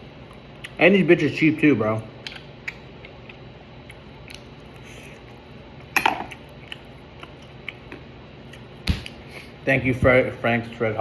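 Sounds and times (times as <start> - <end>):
person eating: 2.2 - 9.6.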